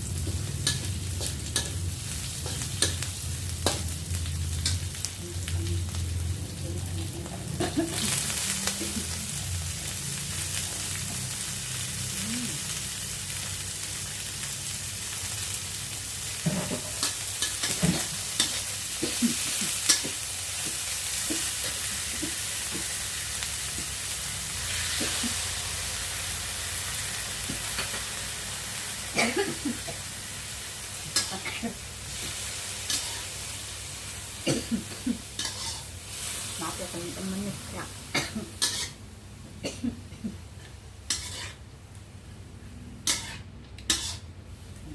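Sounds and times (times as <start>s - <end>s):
food sizzling in a pan: 0.0s - 39.0s, 40.2s - 44.7s
spatula scraping against pan: 35.4s - 35.9s, 41.1s - 41.6s, 43.0s - 44.3s.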